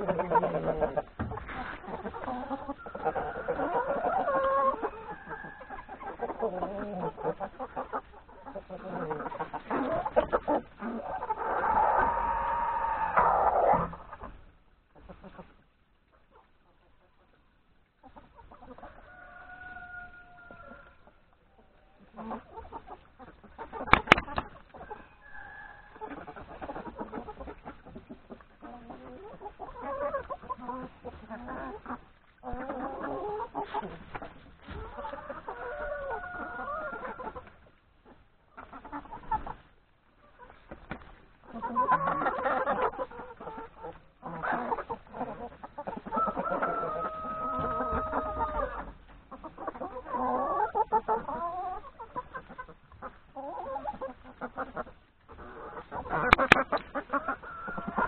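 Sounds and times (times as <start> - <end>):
hens clucking: 0.0 - 58.0
rooster crowing: 19.0 - 21.0, 25.2 - 26.0, 35.6 - 37.0, 46.2 - 48.8.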